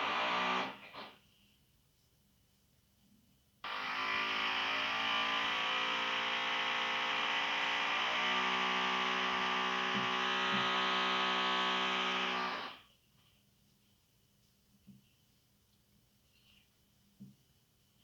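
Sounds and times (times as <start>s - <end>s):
electric drill boring into wall: 0.0s - 1.1s, 3.6s - 12.8s.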